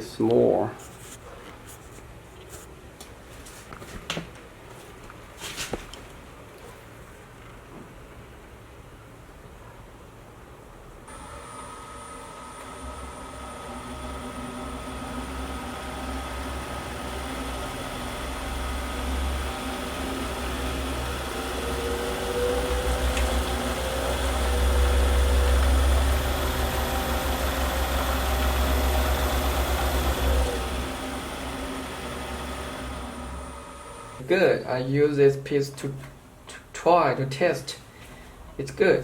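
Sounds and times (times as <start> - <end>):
wood lathe turning: 11.1 - 34.2.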